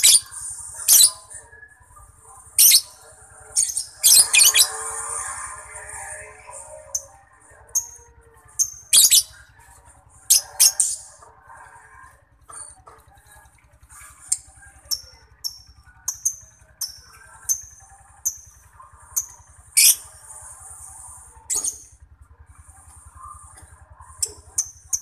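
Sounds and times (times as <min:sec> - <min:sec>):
lovebird high chirps: 0:00.0 - 0:01.4, 0:02.6 - 0:05.4, 0:07.7 - 0:09.4, 0:19.2 - 0:20.2.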